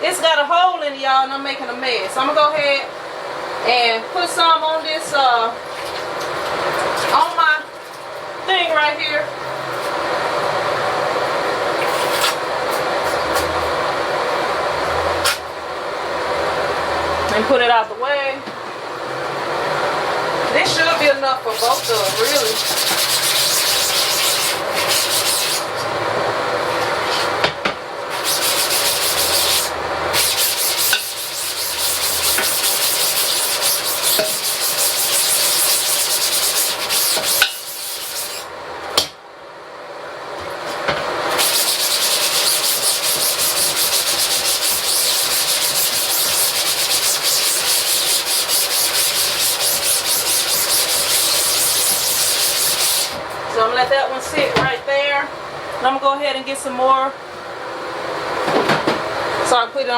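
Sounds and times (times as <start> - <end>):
brush scrubbing mesh screen: 21.4 - 25.7, 28.1 - 38.5, 41.3 - 53.2.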